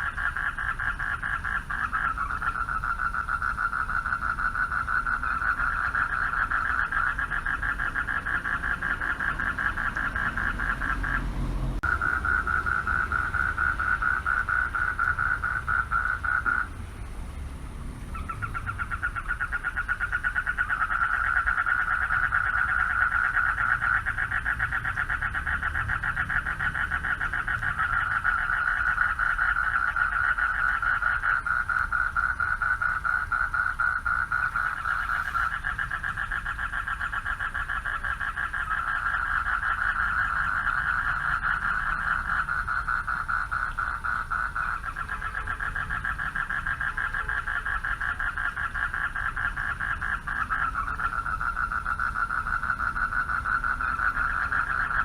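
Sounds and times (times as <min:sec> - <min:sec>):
higher-pitched frog calling: 0:00.0 - 0:17.1, 0:17.8 - 0:55.0
frogs calling: 0:00.0 - 0:55.0.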